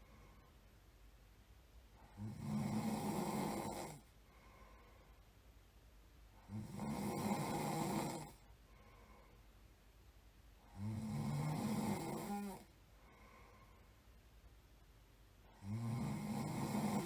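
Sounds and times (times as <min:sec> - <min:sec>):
person snoring: 0:02.0 - 0:04.1, 0:06.4 - 0:08.4, 0:10.6 - 0:12.7, 0:15.5 - 0:17.0.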